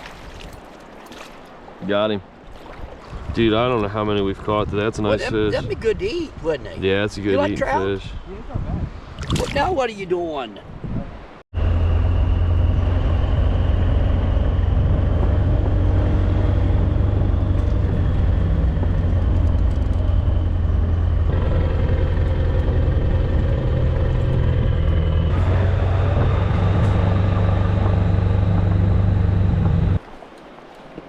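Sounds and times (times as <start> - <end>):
loud low rumble with hum: 11.6 - 30.0.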